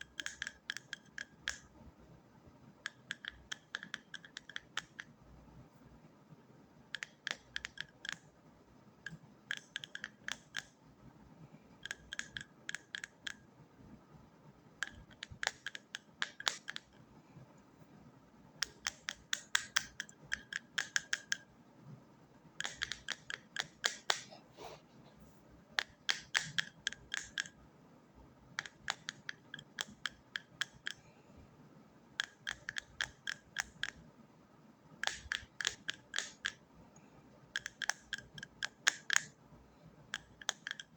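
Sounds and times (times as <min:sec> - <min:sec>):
sharp crisp clicks: 0:00.0 - 0:01.8, 0:02.8 - 0:05.2, 0:06.9 - 0:08.4, 0:09.0 - 0:10.8, 0:11.7 - 0:13.5, 0:14.8 - 0:17.2, 0:18.6 - 0:21.5, 0:22.6 - 0:24.3, 0:25.8 - 0:27.6, 0:28.6 - 0:31.1, 0:32.2 - 0:34.1, 0:35.0 - 0:39.4, 0:40.1 - 0:40.9.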